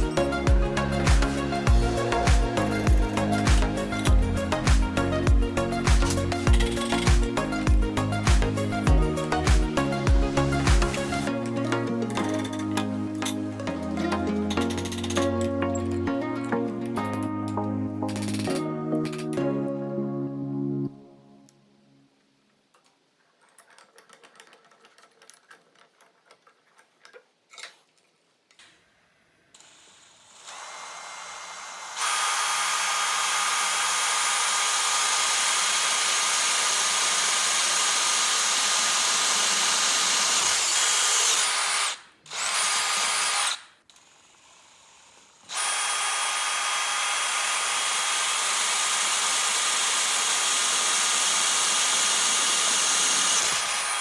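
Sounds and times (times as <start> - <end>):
power tool motor whining: 29.6 - 54.0.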